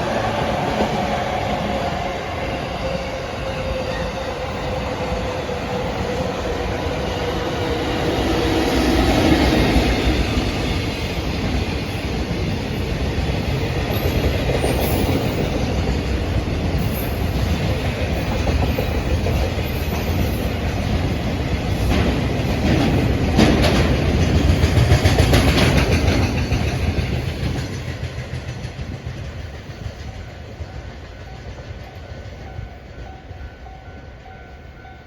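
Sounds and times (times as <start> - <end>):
train wheels clattering over rail joints: 13.4 - 30.4.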